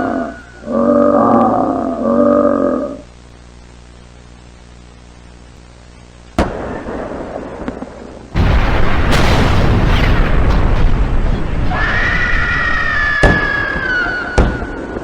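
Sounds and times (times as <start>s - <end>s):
creature roaring: 0.0s - 3.0s
low drone: 0.0s - 3.1s
explosion with heavy rumble: 6.4s - 15.0s.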